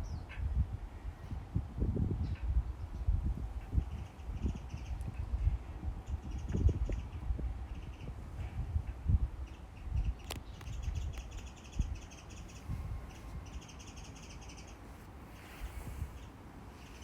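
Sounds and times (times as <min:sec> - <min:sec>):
wind thumps on microphone: 0:00.0 - 0:13.5
small bird harsh calls: 0:09.4 - 0:17.0.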